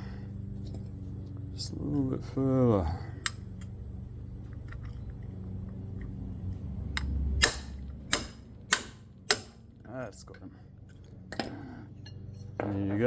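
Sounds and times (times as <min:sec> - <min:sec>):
steady low hum: 0:00.0 - 0:13.0
hammer blows on metal socket: 0:07.4 - 0:09.6.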